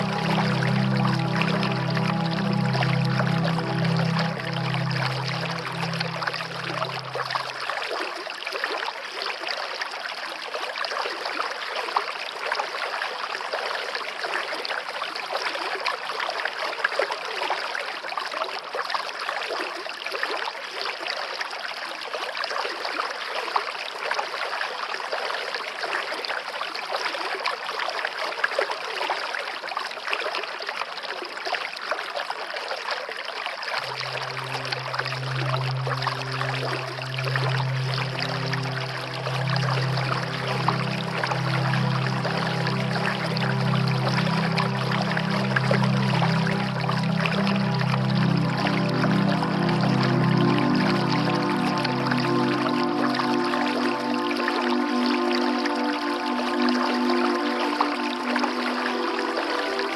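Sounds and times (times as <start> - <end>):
low sustained music notes: 0.0 - 8.1, 33.8 - 59.9
stream water running: 0.0 - 59.9.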